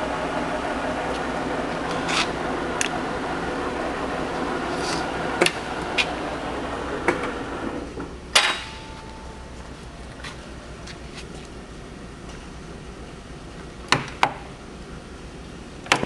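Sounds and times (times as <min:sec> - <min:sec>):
metal lathe running: 0:00.0 - 0:10.8
loud metallic clunk: 0:08.3 - 0:09.1.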